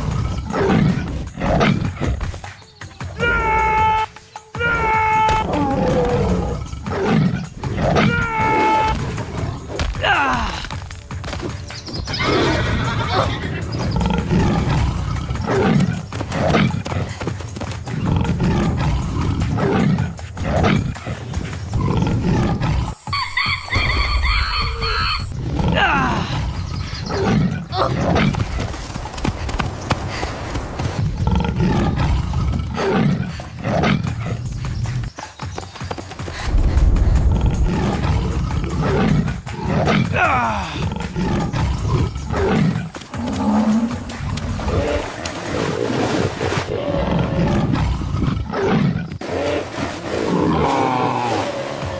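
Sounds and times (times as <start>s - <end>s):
large animal growling and roaring: 5.3s - 9.8s, 13.1s - 17.1s, 36.4s - 51.9s
animal low rumbling calls: 36.3s - 39.7s.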